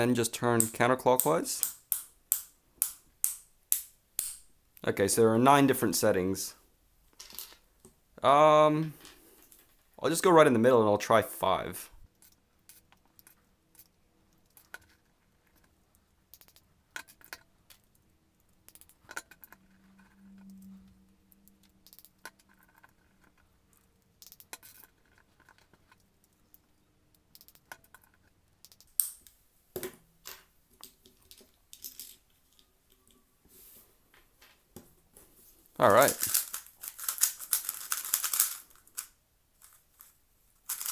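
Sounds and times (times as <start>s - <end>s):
small plastic clicks and scrapes: 12.2s - 20.6s, 21.4s - 29.0s, 36.0s - 40.1s.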